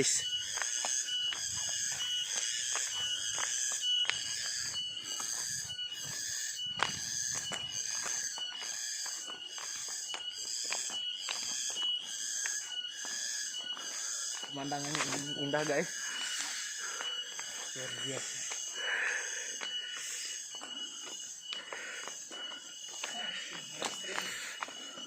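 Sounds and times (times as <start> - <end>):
insects chorus: 0.0 - 25.0
thin repeated tone: 21.9 - 25.0.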